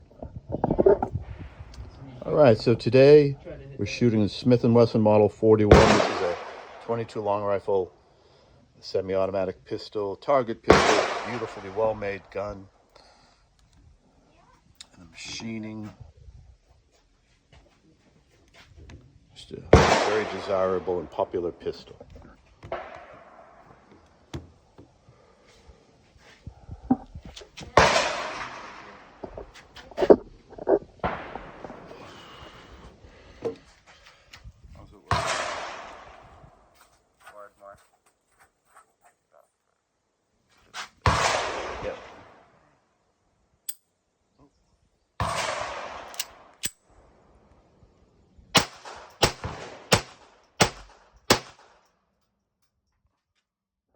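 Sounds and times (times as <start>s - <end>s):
pistol shots echoing: 5.7s - 7.0s, 10.7s - 12.2s, 19.8s - 21.3s, 27.8s - 30.1s, 31.0s - 32.0s, 35.1s - 36.3s, 48.6s - 51.8s.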